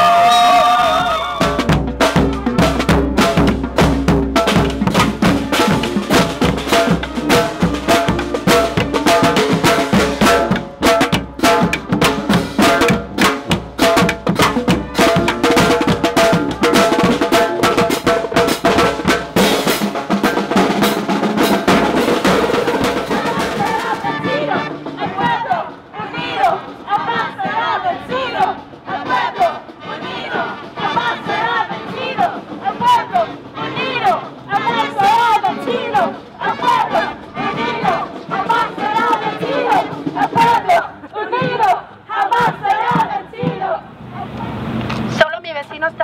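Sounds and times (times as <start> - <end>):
snare and bass drums beating: 1.3 - 33.2.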